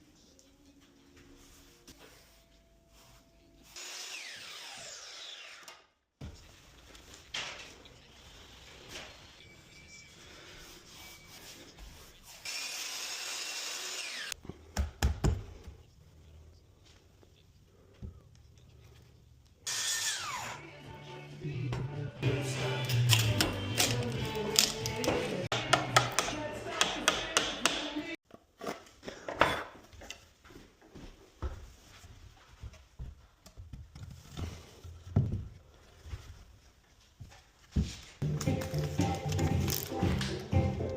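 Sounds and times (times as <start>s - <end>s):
power tool winding down: 12.5s - 14.4s.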